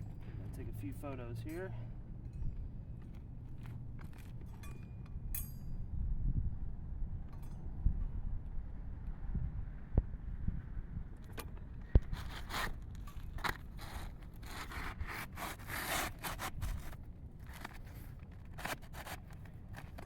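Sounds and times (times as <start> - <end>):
roof shingles scraping: 13.4 - 20.0.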